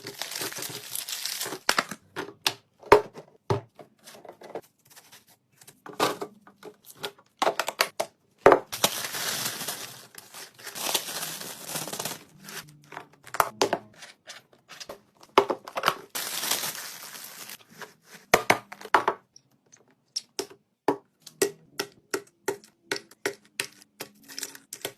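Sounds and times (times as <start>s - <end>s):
packaging crinkling: 0.0s - 2.0s, 8.7s - 12.7s, 15.9s - 17.6s.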